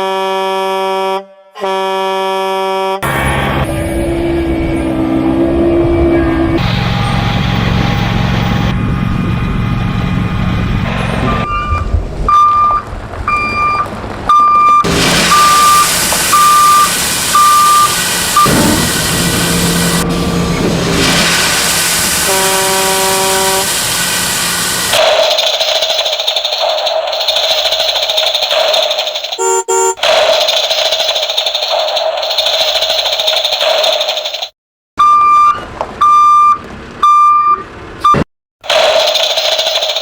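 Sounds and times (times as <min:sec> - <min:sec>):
horn blast: 0:00.0 - 0:07.7, 0:18.4 - 0:23.8, 0:29.4 - 0:30.0
engine running: 0:03.0 - 0:34.5
reversing alarm beeps: 0:11.2 - 0:18.8, 0:29.4 - 0:30.0, 0:35.0 - 0:38.2.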